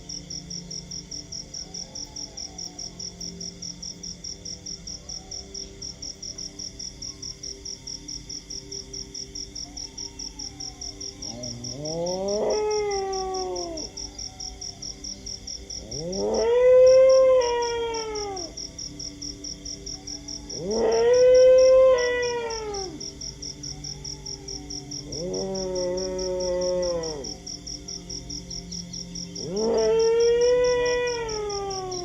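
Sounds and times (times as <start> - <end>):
crickets chirping: 0.0 - 32.0
dogs howling: 9.7 - 15.1, 15.8 - 18.6, 20.0 - 27.6, 29.4 - 32.0.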